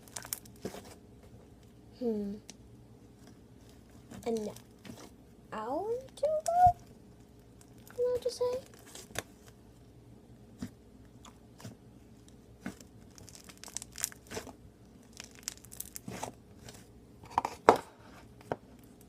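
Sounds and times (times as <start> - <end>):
slime clicking and crackling: 0.0 - 0.7, 4.0 - 5.0, 5.9 - 9.4, 11.1 - 16.8.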